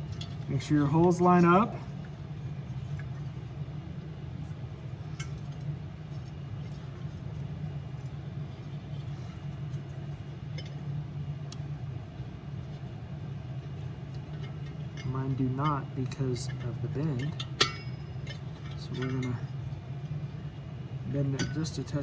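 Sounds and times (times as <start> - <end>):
low mechanical hum: 0.0 - 22.0.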